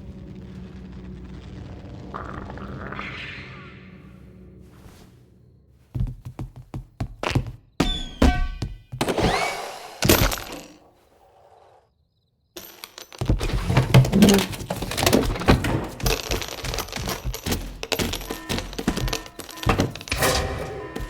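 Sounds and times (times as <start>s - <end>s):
clattering and crashing: 12.6s - 21.0s
crash with ringing tone: 20.1s - 21.0s.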